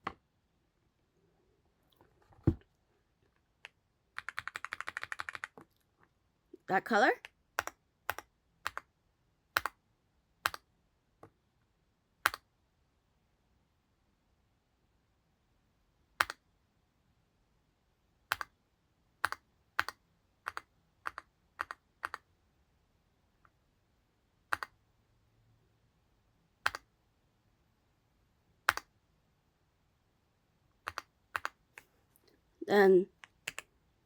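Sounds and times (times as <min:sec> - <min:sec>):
mechanical keyboard key clicks: 0:04.2 - 0:05.6, 0:24.5 - 0:24.7.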